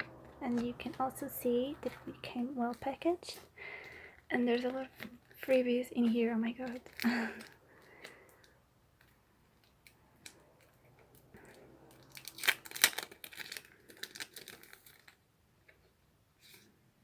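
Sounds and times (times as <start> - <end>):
packaging crinkling: 0.1 - 15.3.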